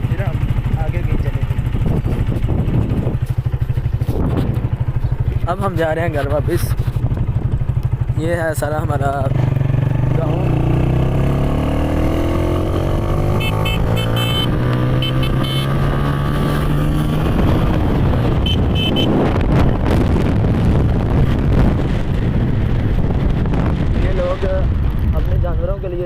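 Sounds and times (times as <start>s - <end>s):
motorcycle engine running: 0.0s - 26.0s.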